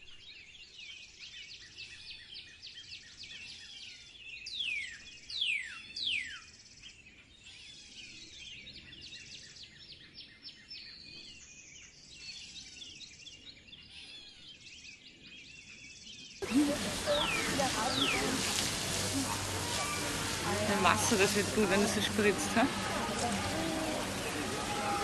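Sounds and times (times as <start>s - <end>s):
birds chirping and singing: 16.4s - 25.0s
downward whistled bird calls: 16.4s - 25.0s.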